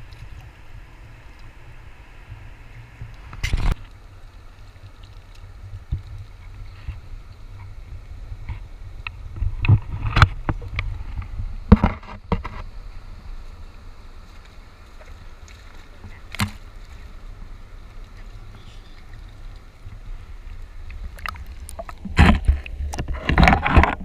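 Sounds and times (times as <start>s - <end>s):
steady low rumble: 0.0s - 24.0s
sharp knocks and thumps: 11.7s - 12.7s, 21.8s - 24.0s.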